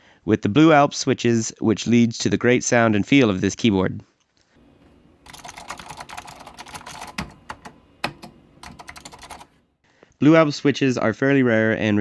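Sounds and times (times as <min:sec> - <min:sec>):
keyboard key clicks: 0:05.3 - 0:09.5.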